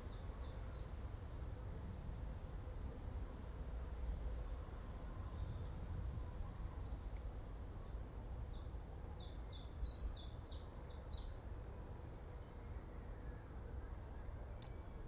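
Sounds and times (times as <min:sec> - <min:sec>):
songbird singing: 0:00.0 - 0:01.0, 0:05.4 - 0:13.9
low wind rumble: 0:00.0 - 0:15.0.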